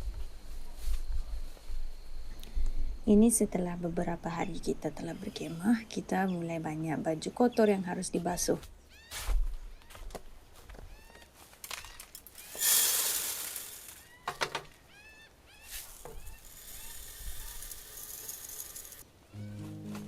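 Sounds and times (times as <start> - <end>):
small birds chirping: 4.2 - 10.0, 13.9 - 18.0
music: 19.3 - 20.0.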